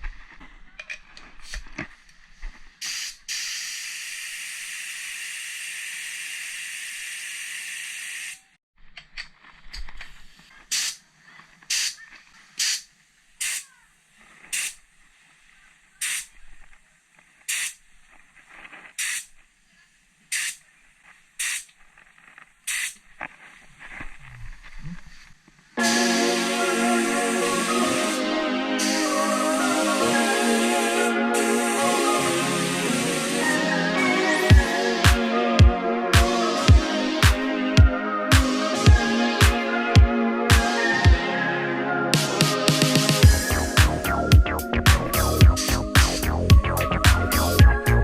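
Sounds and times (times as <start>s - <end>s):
compressed air spray hissing: 2.8s - 8.5s, 10.7s - 11.0s, 11.6s - 16.6s, 17.4s - 18.0s, 18.9s - 19.4s, 20.3s - 21.8s, 22.6s - 23.1s, 25.8s - 35.1s.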